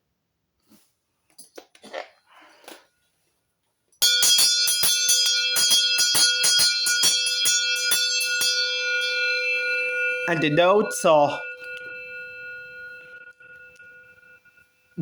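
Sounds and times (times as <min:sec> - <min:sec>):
large bell ringing rapidly: 0:04.0 - 0:15.0.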